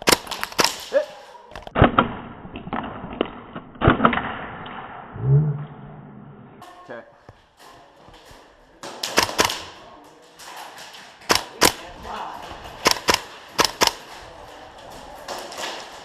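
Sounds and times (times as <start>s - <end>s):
airsoft rifle shots: 0.0s - 1.0s, 9.0s - 9.8s, 11.3s - 11.8s, 12.8s - 14.1s.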